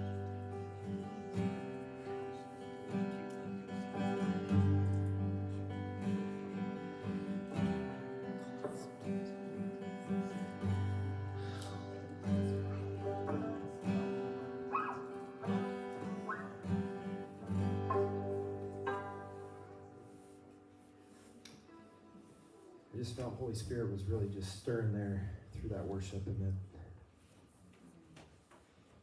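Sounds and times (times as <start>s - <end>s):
acoustic guitar strumming: 0.0s - 21.0s.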